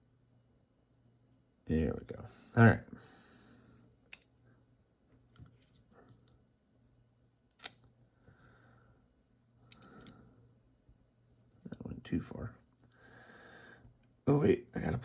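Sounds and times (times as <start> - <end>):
small metal parts clicking: 4.1 - 4.3, 7.5 - 7.9, 9.7 - 10.2.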